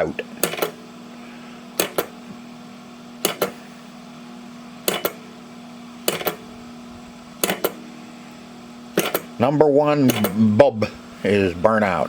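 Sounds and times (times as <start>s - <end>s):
steady mains hum: 0.0s - 12.0s
tape player mechanism double click: 0.4s - 0.8s, 1.8s - 2.2s, 3.2s - 3.6s, 4.8s - 5.2s, 6.0s - 6.5s, 7.4s - 7.8s, 8.9s - 9.4s, 10.0s - 10.5s.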